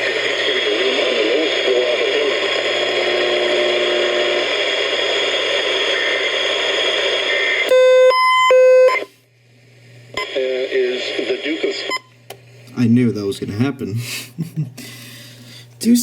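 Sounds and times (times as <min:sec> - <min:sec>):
radio hiss and static: 0:00.0 - 0:08.0, 0:10.1 - 0:12.1.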